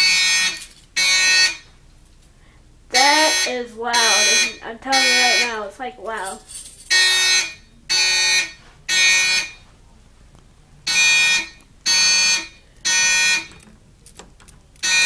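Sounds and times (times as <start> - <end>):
fire alarm sounder beeping: 0.0 - 1.7, 2.9 - 5.7, 6.9 - 9.7, 10.8 - 13.6, 14.8 - 15.0.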